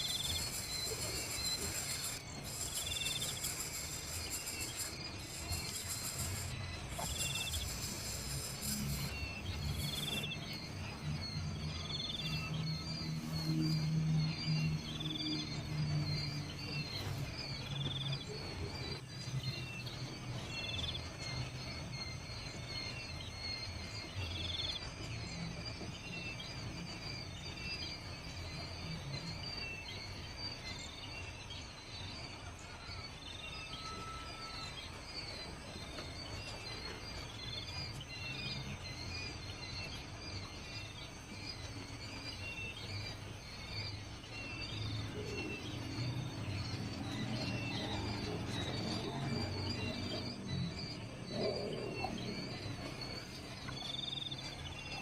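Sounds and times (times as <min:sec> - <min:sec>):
high chirps: 0:00.0 - 0:19.0.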